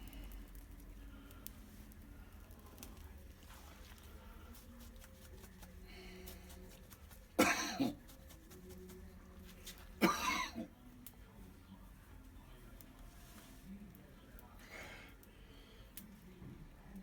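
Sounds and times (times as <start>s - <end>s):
person coughing: 7.4s - 8.0s, 10.0s - 10.7s.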